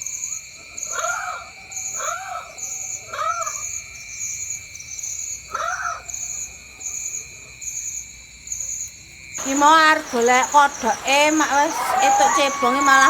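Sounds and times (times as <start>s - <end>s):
crickets and insects chirping: 0.0s - 13.0s
animal call rising and falling: 9.4s - 13.0s.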